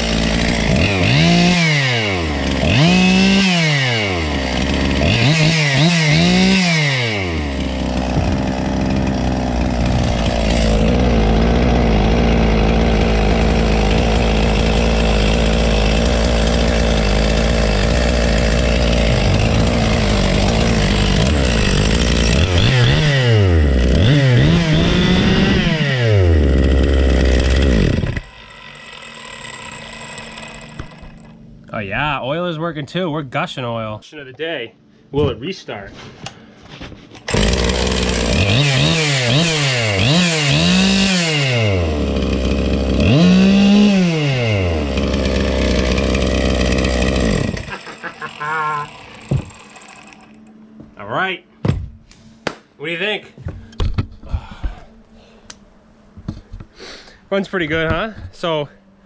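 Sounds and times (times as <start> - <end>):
chainsaw revving and idling: 0.0 - 31.4, 37.3 - 50.6.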